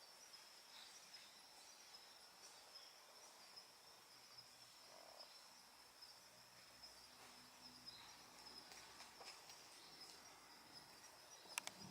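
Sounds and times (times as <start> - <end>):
high-pitched insect trill: 0.0 - 11.9.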